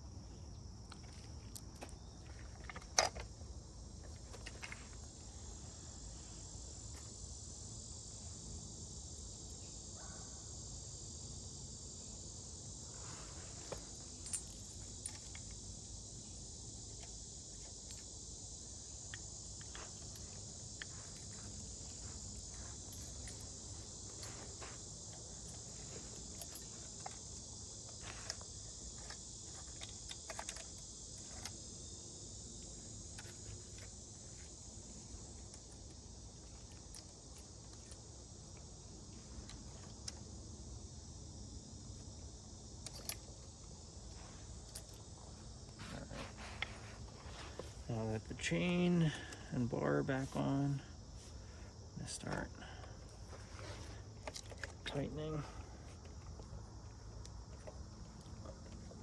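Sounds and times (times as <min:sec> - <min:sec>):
insects chorus: 0:00.0 - 0:59.0.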